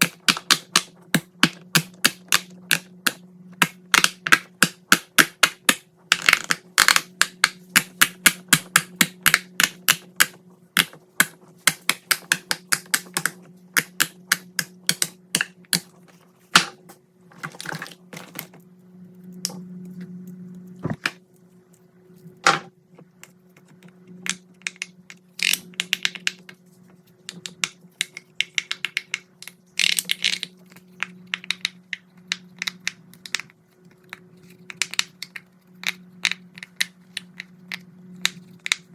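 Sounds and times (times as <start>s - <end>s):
low hum: 7.4s - 38.9s.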